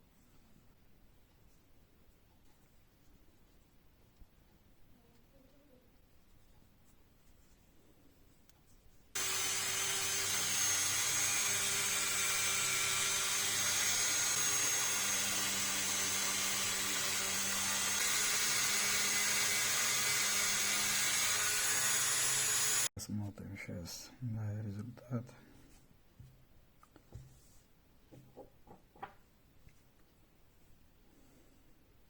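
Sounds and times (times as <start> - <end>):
rotary tool polishing metal: 9.2 - 22.9.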